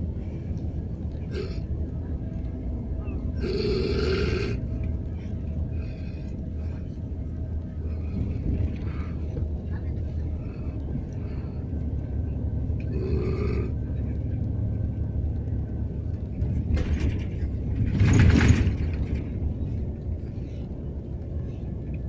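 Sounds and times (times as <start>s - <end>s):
moving bus rumble: 0.0s - 22.0s
man snoring heavily: 3.4s - 4.6s.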